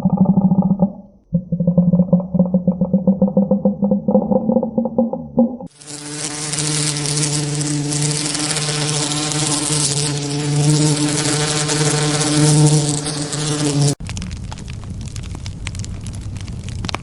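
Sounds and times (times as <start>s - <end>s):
flying insect buzzing: 5.7s - 14.0s.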